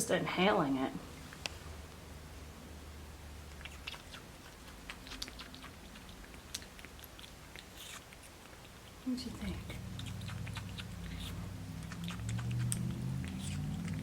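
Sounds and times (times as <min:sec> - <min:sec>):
monkey chewing and smacking: 0:03.4 - 0:14.0.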